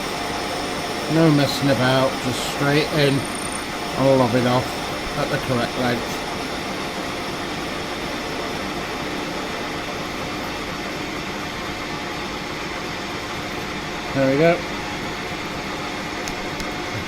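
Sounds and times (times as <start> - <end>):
lathe running: 0.0 - 11.2.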